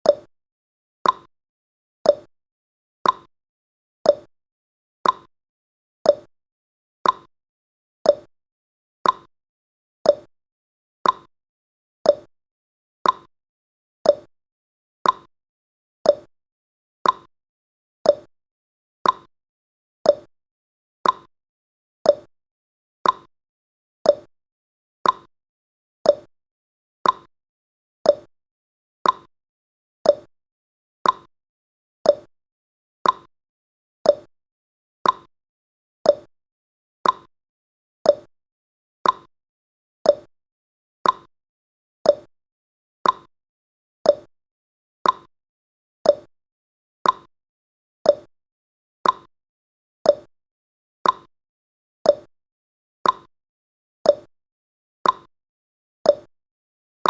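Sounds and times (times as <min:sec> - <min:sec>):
clock ticking: 0:33.0 - 0:33.3, 0:35.0 - 0:35.3, 0:37.0 - 0:37.3, 0:39.0 - 0:39.3, 0:41.0 - 0:41.3, 0:43.0 - 0:43.3, 0:45.0 - 0:45.3, 0:47.0 - 0:47.3, 0:49.0 - 0:49.3, 0:53.0 - 0:53.3.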